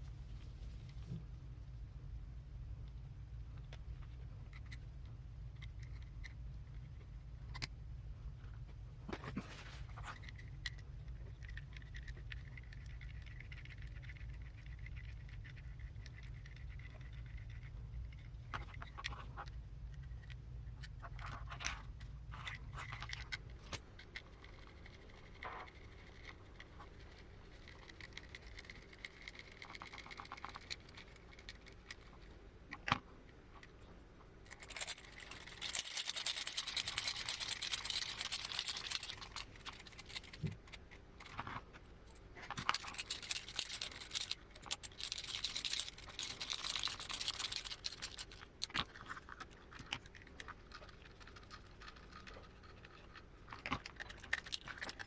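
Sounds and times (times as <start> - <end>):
scratchy rustling: 34.5 - 41.5, 42.4 - 53.1
plastic and metal parts clicking: 42.5 - 50.0.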